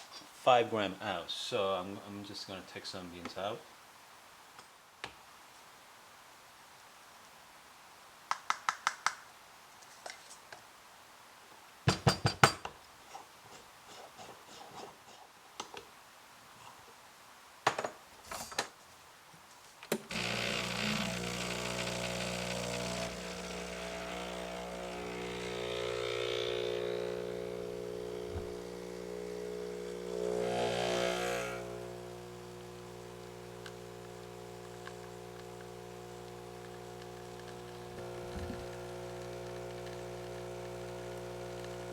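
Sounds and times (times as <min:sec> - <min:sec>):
espresso machine pump humming: 0:20.1 - 0:41.9.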